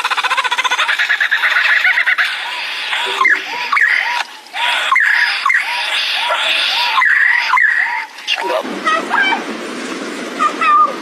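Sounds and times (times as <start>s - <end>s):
bird calling with whistled sweeps: 2.4s - 8.2s.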